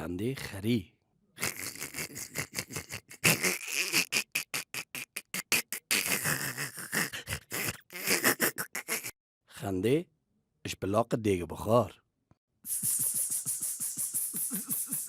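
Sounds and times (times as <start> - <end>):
person laughing like a donkey braying: 1.4 - 9.1, 12.8 - 15.0.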